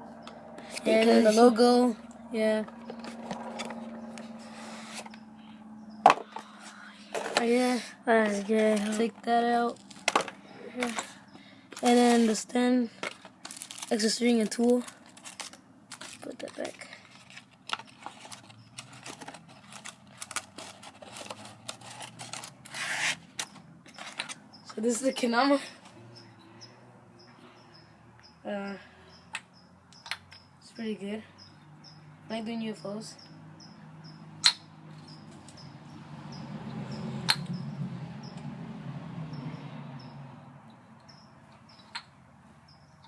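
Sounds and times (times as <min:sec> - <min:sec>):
low hum: 0:00.0 - 0:08.0
packaging rustle: 0:13.0 - 0:24.4
packaging clicks and taps: 0:14.5 - 0:22.7
crickets chirping: 0:32.8 - 0:34.4, 0:35.0 - 0:38.4, 0:39.2 - 0:41.9
wooden toy clacking: 0:34.4 - 0:35.2, 0:37.3 - 0:37.6, 0:41.6 - 0:42.2.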